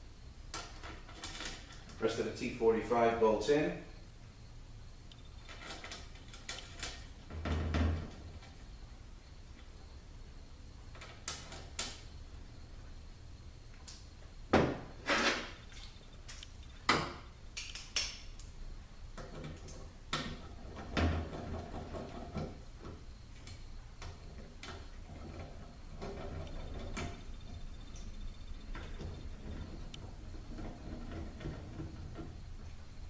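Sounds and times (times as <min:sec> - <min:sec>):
metallic clinks of bolts and tools: 0:05.3 - 0:07.1.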